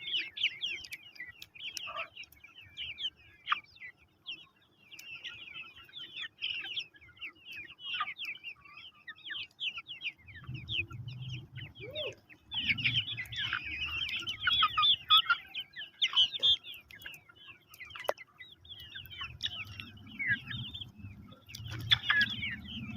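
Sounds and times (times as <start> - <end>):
chickens clucking: 0.0 - 22.9
low rumble: 10.3 - 13.9, 19.2 - 22.9.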